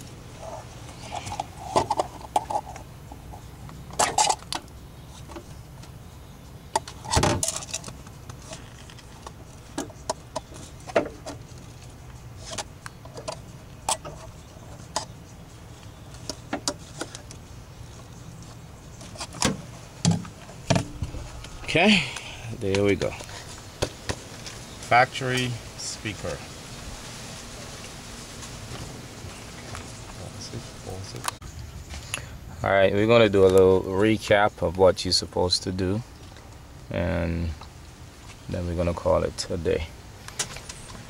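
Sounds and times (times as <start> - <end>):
clicks and rattles of speaker handling: 0.9 - 2.9, 3.7 - 6.0, 6.7 - 15.2, 15.8 - 24.6.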